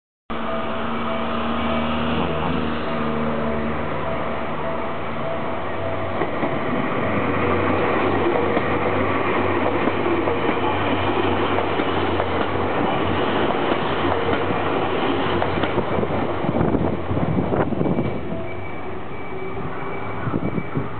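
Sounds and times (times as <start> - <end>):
electric train passing: 0.3 - 20.9
train wheels knocking: 8.2 - 16.3.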